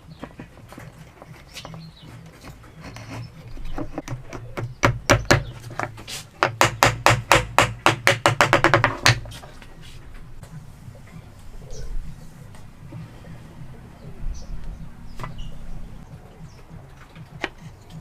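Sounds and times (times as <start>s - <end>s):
hammer knocking on wood: 3.8s - 9.4s.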